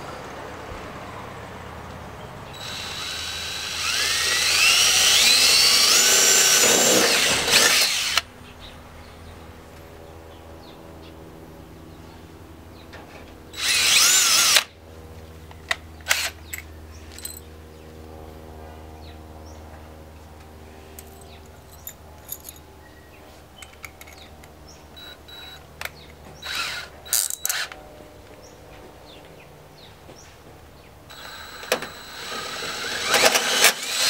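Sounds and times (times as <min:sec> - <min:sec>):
power drill whining: 0:02.6 - 0:08.3, 0:13.6 - 0:14.7, 0:25.0 - 0:25.6, 0:26.4 - 0:27.8, 0:31.1 - 0:34.0.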